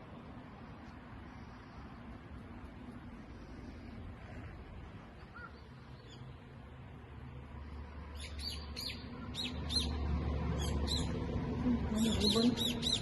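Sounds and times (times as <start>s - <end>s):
birds chirping: 5.0s - 7.0s, 8.1s - 13.0s.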